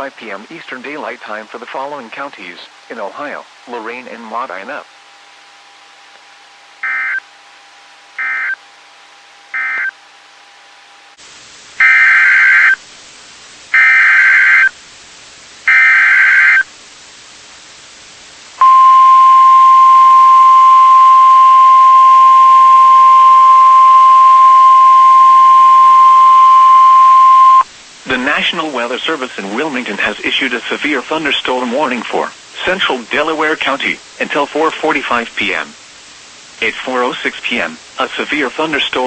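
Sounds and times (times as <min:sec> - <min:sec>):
screechy data tone bursts: 0:06.8 - 0:07.2, 0:08.2 - 0:08.6, 0:09.5 - 0:09.9, 0:11.8 - 0:12.8, 0:13.7 - 0:14.7, 0:15.7 - 0:16.7
steady warning alarm tone: 0:06.8 - 0:07.2, 0:08.2 - 0:08.6, 0:09.5 - 0:10.0, 0:11.8 - 0:12.8, 0:15.7 - 0:16.6, 0:18.6 - 0:27.7.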